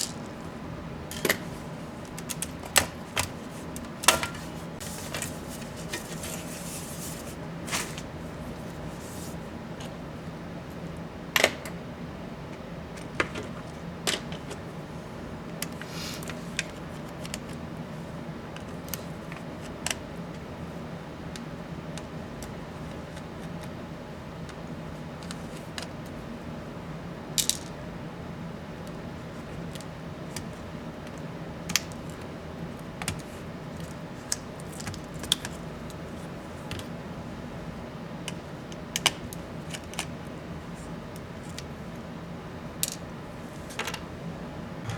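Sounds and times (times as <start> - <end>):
steady low hum: 44.2 - 44.9.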